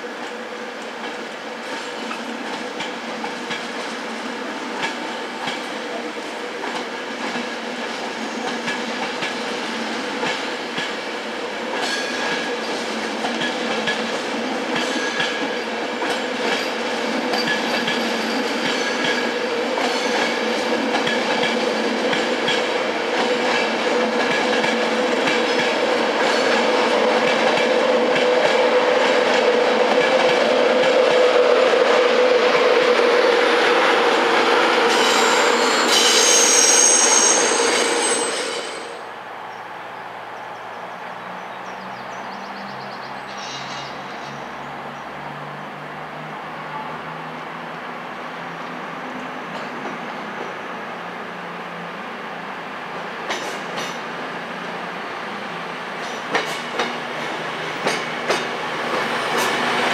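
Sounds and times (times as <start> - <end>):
train hum: 0.0 - 59.9
high-pitched wheel squeal: 34.9 - 39.0.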